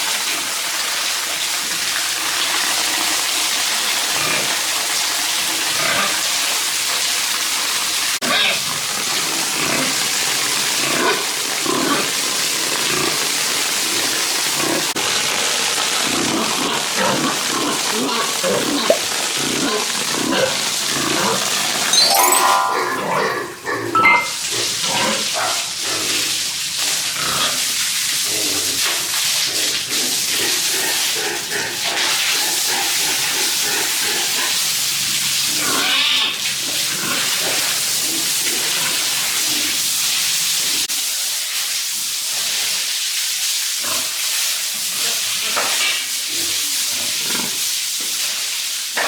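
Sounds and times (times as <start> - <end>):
pigs grunting: 8.3 - 13.3, 29.6 - 34.6.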